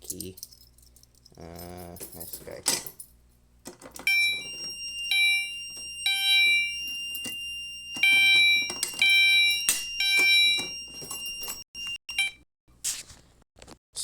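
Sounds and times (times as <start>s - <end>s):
fire alarm short tones: 4.0s - 12.4s.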